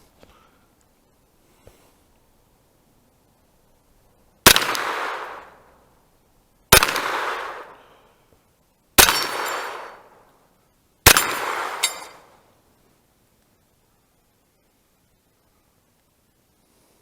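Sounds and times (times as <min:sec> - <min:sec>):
rifle shots echoing: 0:04.4 - 0:05.6, 0:06.7 - 0:07.8, 0:09.0 - 0:10.2, 0:11.0 - 0:12.4
metallic clink: 0:11.1 - 0:12.3.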